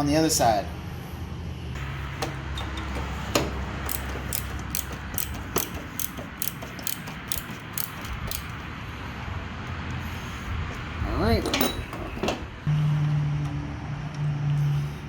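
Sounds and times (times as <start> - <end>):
ratchet wrench clicking: 3.8 - 8.6.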